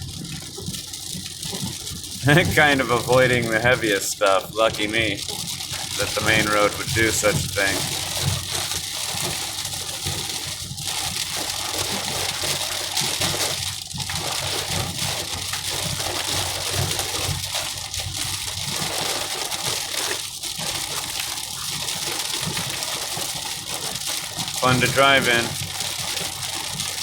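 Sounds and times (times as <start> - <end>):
heavy rain and road spray hiss: 1.6 - 8.6, 24.6 - 25.6.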